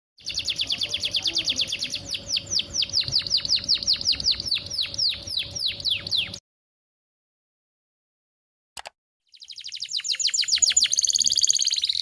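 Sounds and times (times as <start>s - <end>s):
canary singing a fast trill: 0.2s - 6.4s, 9.2s - 12.0s.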